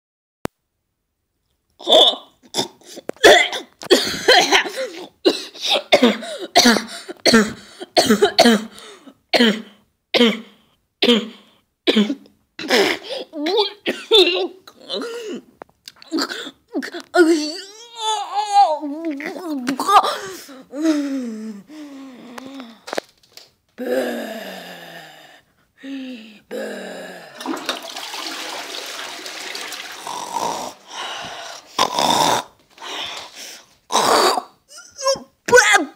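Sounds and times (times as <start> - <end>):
person coughing hoarsely: 1.8 - 8.8, 9.4 - 15.5
person wheezing and gasping: 1.8 - 9.2, 12.6 - 13.4, 14.7 - 15.5, 19.2 - 23.0, 30.0 - 35.4
strained vocal sounds: 29.8 - 32.6
raspy hissing breathing: 30.0 - 32.0.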